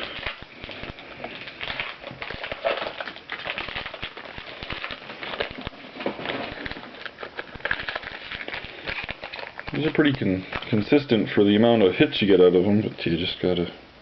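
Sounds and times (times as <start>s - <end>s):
cards clicking and rustling: 0.0s - 11.1s.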